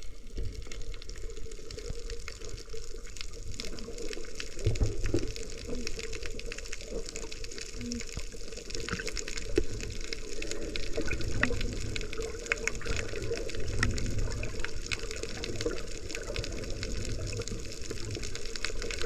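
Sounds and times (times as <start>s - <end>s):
small clicks and crackles: 0.0s - 19.0s
water sloshing and bubbling: 0.0s - 19.0s.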